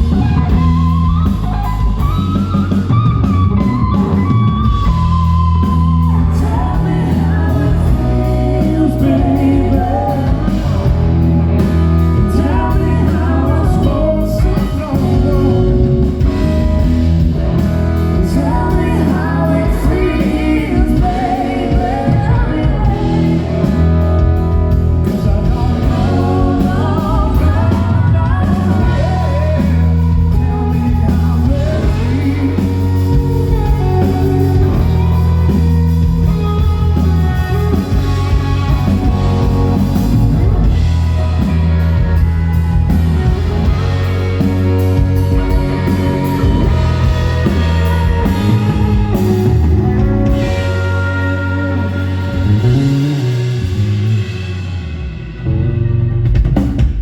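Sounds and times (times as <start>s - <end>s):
bass and drums: 0.0s - 57.0s
electric guitar: 0.0s - 57.0s
person singing: 4.9s - 17.0s, 17.9s - 35.6s, 41.4s - 53.9s.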